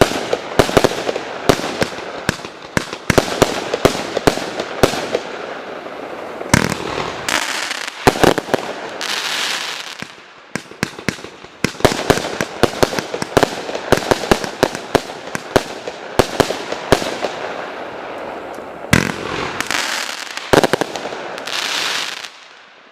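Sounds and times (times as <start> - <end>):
firework battery shots: 6.5 - 9.8, 18.9 - 22.3.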